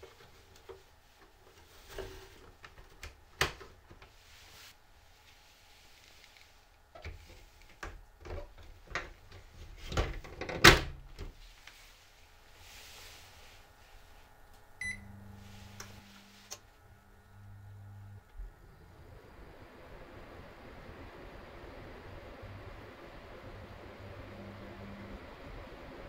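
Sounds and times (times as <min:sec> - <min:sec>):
low steady hum: 0:10.9 - 0:26.0
short electronic beep: 0:14.8 - 0:15.1.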